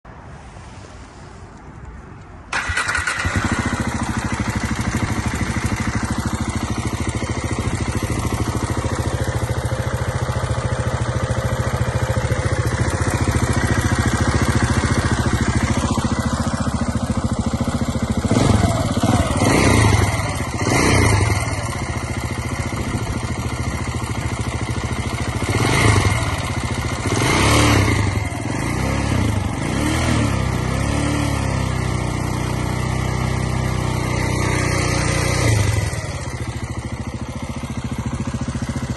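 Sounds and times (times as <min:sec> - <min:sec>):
motorcycle engine starting and idling: 0:01.9 - 0:38.9
engine ticking: 0:02.5 - 0:29.7.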